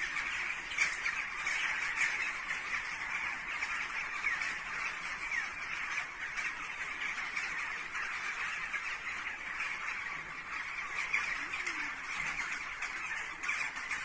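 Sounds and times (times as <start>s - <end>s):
flock of birds calling: 0.0s - 14.0s.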